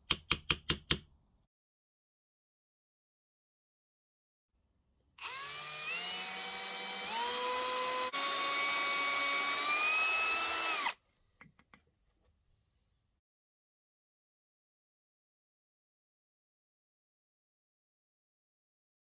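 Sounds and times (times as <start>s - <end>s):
small power tool motor running: 5.2s - 11.0s.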